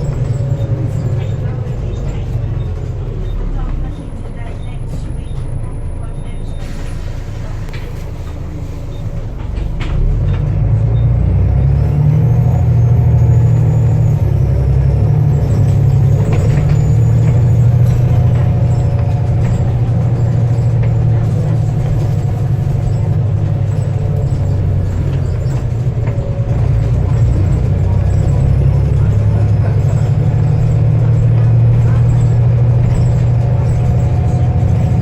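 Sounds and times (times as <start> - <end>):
bus diesel engine pulling: 0.0 - 35.0.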